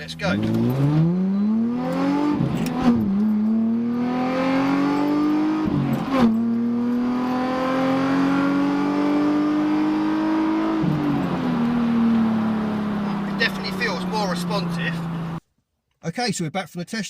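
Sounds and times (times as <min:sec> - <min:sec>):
car engine accelerating hard: 0:00.0 - 0:15.4.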